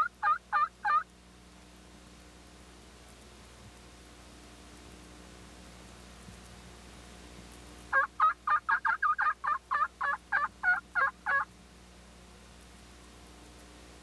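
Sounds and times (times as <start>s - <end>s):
turkey yelps: 0.0s - 1.0s, 7.9s - 11.5s
faint steady hiss: 0.0s - 14.0s.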